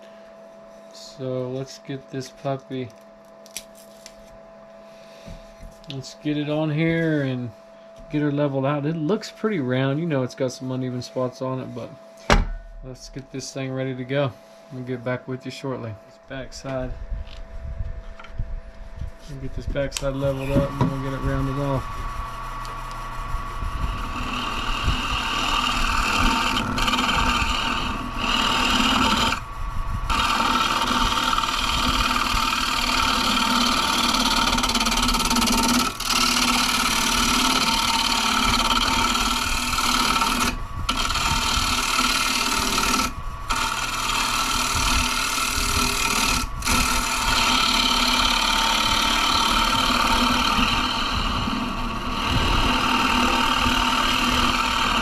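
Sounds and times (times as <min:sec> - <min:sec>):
turning tool scraping wood: 0:19.0 - 0:55.0
lathe motor hum: 0:19.1 - 0:55.0.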